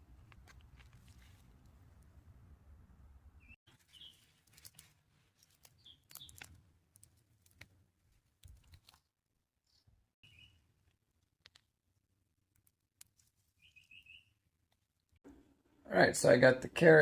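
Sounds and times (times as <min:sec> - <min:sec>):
faint bird chirps: 0:03.4 - 0:04.4, 0:05.7 - 0:06.5, 0:09.7 - 0:10.6, 0:13.6 - 0:14.4
light clicks and rustles: 0:04.1 - 0:09.1.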